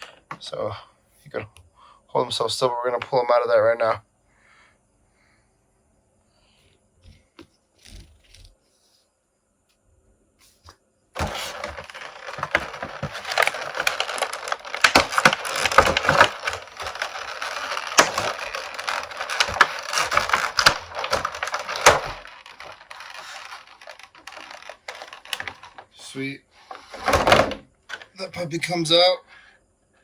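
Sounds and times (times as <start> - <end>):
stiff plastic packaging crinkling: 11.2 - 28.0.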